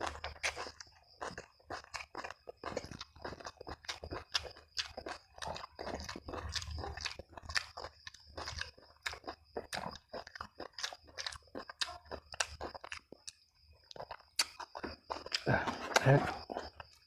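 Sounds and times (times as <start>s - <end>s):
person chewing crunchy food: 0.0s - 17.0s.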